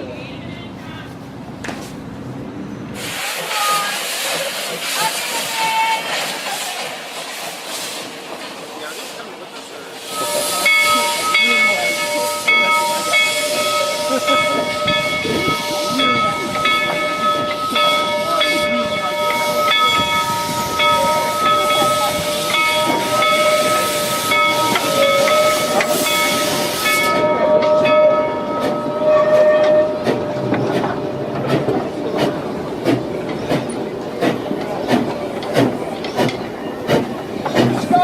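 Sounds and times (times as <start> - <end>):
loud steam hiss: 2.9 - 27.3
steam locomotive chime whistle: 5.0 - 6.1, 10.0 - 31.4.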